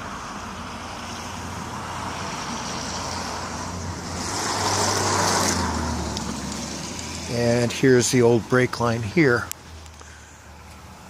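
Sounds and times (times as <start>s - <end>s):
vehicle tyre hiss passing: 0.0s - 7.7s
steady low traffic hum: 0.0s - 11.0s.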